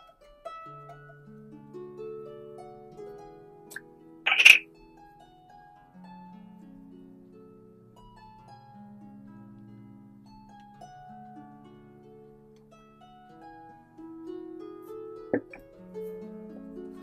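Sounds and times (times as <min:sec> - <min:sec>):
slow plucked background music: 0:00.0 - 0:17.0.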